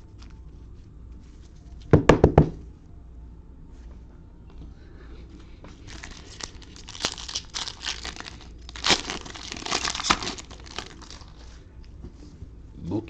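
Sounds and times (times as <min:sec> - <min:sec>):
card pack wrapper tearing and crinkling: 0:05.8 - 0:11.5.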